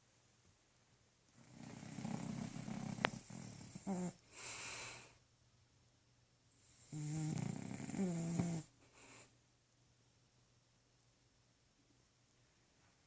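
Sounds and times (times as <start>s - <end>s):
buzzing snore: 1.4s - 4.2s, 6.7s - 8.7s
breathy hiss of breath: 1.9s - 5.2s, 8.8s - 9.4s.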